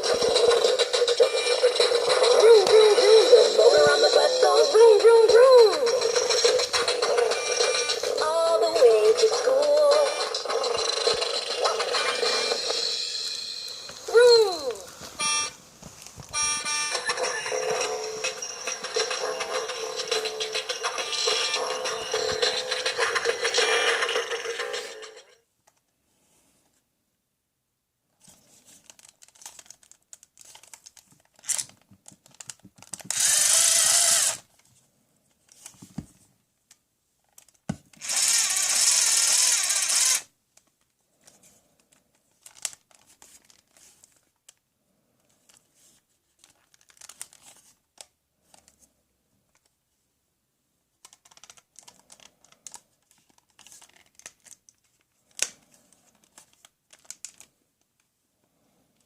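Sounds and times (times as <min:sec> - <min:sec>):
plastic toy tools rattling: 0:00.0 - 0:08.8, 0:17.3 - 0:25.2, 0:28.8 - 0:34.4, 0:37.4 - 0:40.3
toy power tool whirring: 0:00.0 - 0:13.0, 0:16.4 - 0:25.1, 0:33.0 - 0:34.5, 0:38.0 - 0:40.3.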